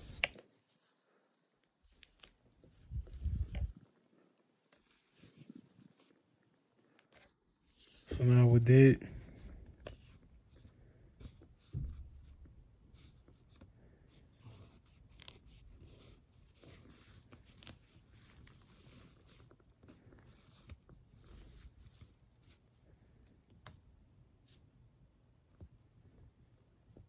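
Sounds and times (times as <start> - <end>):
soft clicks and rustles: 0.0 - 8.2, 9.3 - 24.7.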